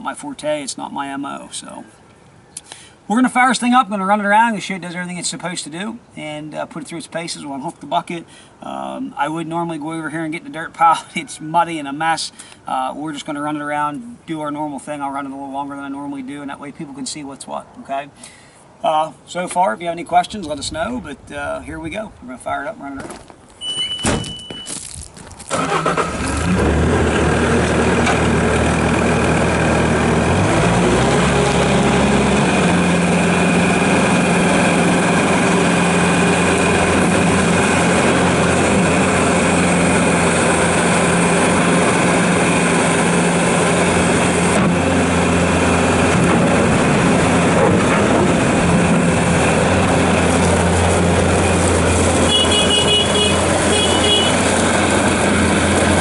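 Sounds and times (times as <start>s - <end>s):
short electronic beeps: 23.6s - 24.8s
diesel engine starting and running: 23.6s - 56.0s.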